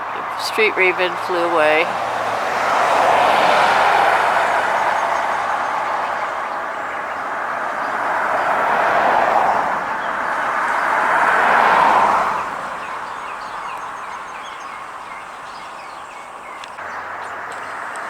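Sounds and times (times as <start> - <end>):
vehicle passing: 0.0 - 18.0
small bird chirping: 12.4 - 18.0.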